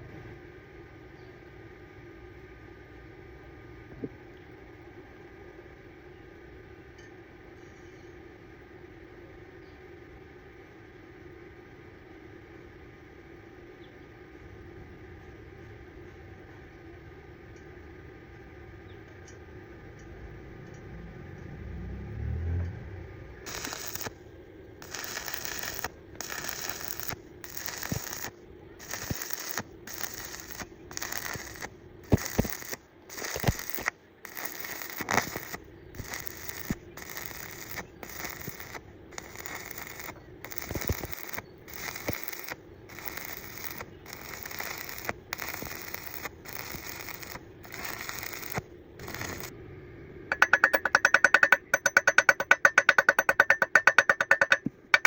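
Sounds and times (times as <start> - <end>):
welding pops: 23.4 - 24.2, 24.8 - 49.5, 50.3 - 55.0
arc welding crackling: 23.4 - 49.6, 50.3 - 55.0.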